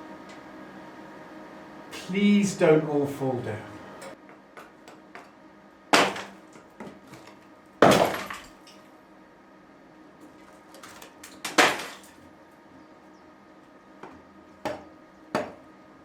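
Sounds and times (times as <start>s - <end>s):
debris clicking and rattling: 6.0s - 8.8s, 10.3s - 12.2s
stones and rubble crashing down: 7.0s - 8.6s, 10.8s - 12.2s.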